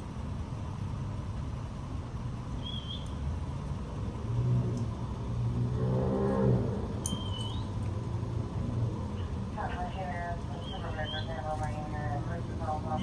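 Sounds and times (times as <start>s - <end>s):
street traffic rumble: 0.0s - 13.0s
vehicle engine approaching: 3.5s - 9.6s.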